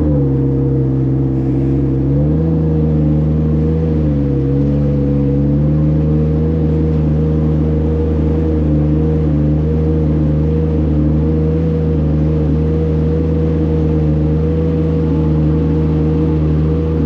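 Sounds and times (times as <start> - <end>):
boat motor running: 0.0 - 17.0.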